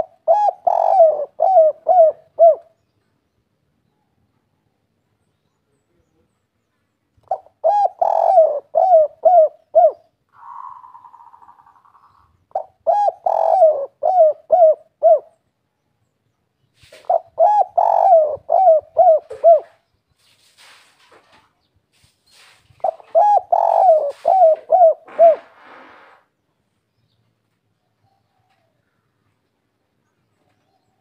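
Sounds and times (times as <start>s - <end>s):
dove cooing: 0.0s - 2.8s, 7.2s - 15.4s, 16.9s - 19.8s, 22.8s - 26.1s.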